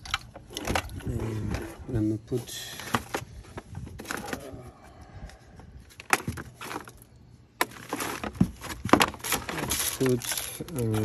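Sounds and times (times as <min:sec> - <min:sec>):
plastic parts clicking and knocking: 0:07.6 - 0:11.0.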